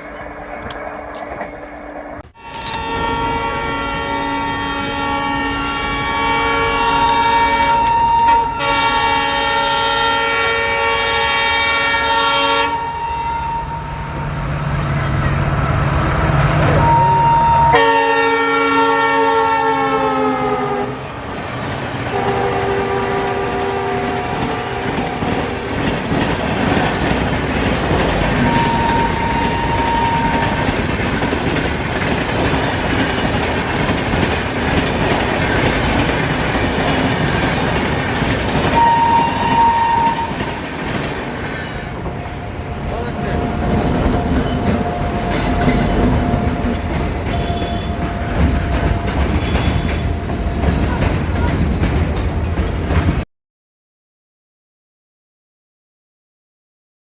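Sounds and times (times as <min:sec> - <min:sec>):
locomotive horn chord: 0:02.4 - 0:14.4, 0:16.6 - 0:21.2, 0:22.1 - 0:25.7, 0:28.4 - 0:30.6, 0:38.8 - 0:40.4, 0:41.8 - 0:50.2
train wheels clickety-clack: 0:21.2 - 0:53.2.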